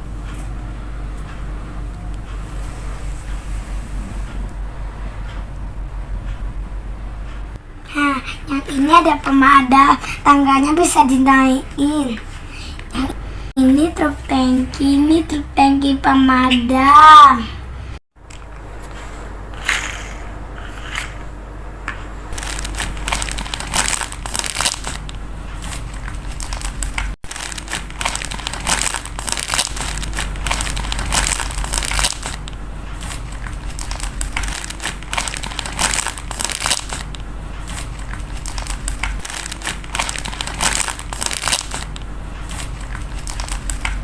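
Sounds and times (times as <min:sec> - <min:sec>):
plastic packaging crinkling: 0:22.3 - 0:44.0.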